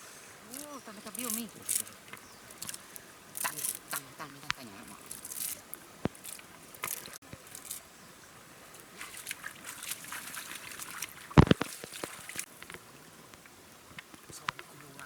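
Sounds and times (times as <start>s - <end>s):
water sloshing and splashing: 0.4s - 14.8s
small clicks: 0.5s - 2.8s, 3.4s - 7.8s.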